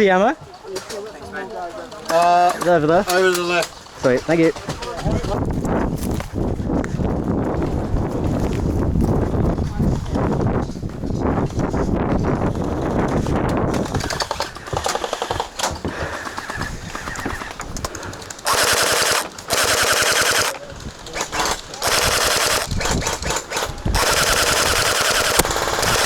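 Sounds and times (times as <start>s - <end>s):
gel blaster firing full auto: 18.4s - 20.6s, 21.2s - 26.0s.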